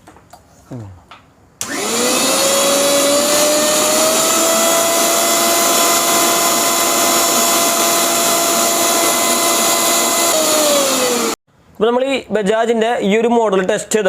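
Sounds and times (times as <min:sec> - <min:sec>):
mixer grinder motor whining: 0:01.6 - 0:11.4.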